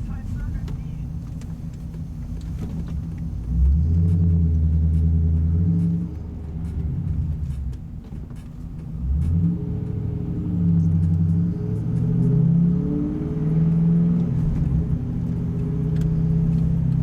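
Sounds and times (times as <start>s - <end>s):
car exhaust droning in cabin: 0.0s - 17.0s.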